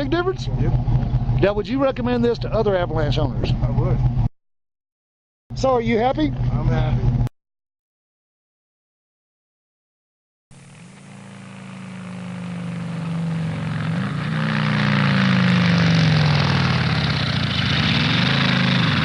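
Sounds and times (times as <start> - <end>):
engine revving: 0.0 - 4.3, 10.5 - 19.0.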